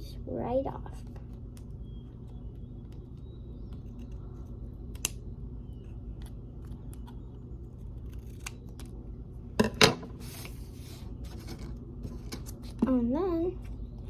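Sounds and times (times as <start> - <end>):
low hum: 0.0 - 14.0
scissors snipping paper: 7.8 - 8.9.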